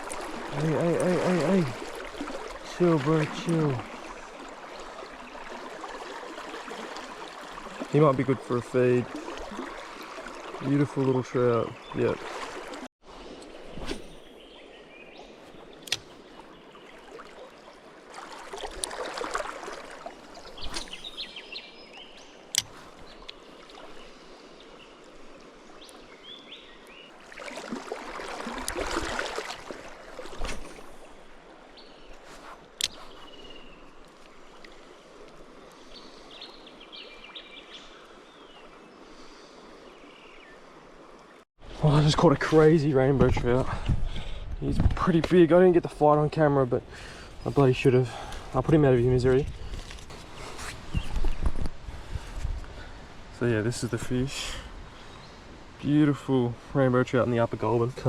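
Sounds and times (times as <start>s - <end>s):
river flowing: 0.0s - 43.6s
birds chirping: 6.7s - 12.8s, 13.5s - 18.0s, 20.2s - 27.3s, 30.1s - 41.4s, 45.5s - 51.7s.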